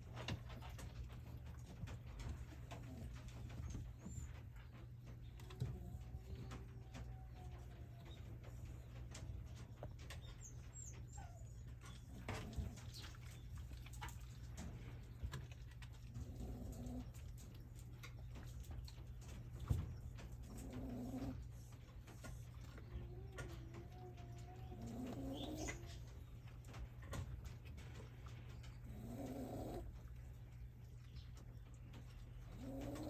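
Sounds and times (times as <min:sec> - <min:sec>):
puppy snoring: 0:02.4 - 0:04.3, 0:16.1 - 0:17.2, 0:20.4 - 0:21.5, 0:23.8 - 0:26.0, 0:28.8 - 0:30.0, 0:32.5 - 0:33.0.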